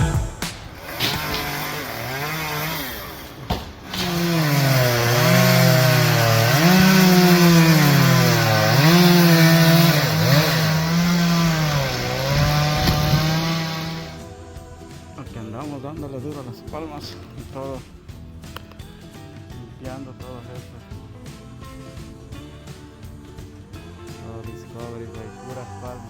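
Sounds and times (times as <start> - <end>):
chainsaw engine revving: 0.7 - 14.2.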